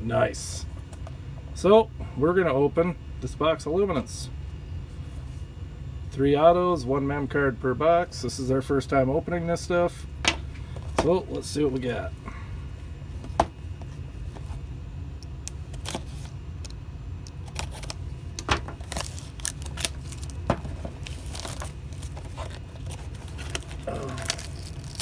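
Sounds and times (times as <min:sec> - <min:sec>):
low steady hum: 0:00.0 - 0:25.0
plastic wrap and cardboard crinkling: 0:17.4 - 0:25.0.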